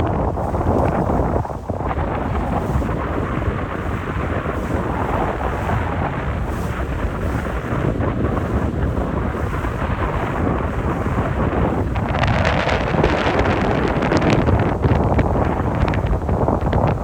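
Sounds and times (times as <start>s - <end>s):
boat and water noise: 0.0s - 17.0s
wind rumbling on microphone: 0.0s - 17.0s.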